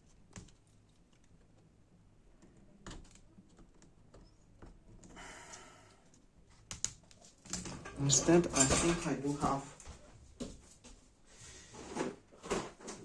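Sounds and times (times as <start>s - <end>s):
hands clicking and tapping laptop: 0.0s - 1.6s, 2.3s - 5.2s, 6.1s - 7.7s.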